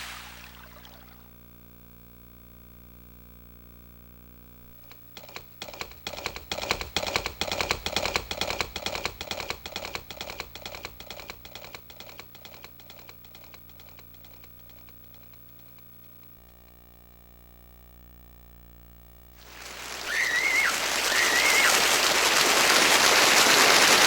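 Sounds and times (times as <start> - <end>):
rapid run of sharp clicks: 4.8 - 16.4, 19.4 - 24.0.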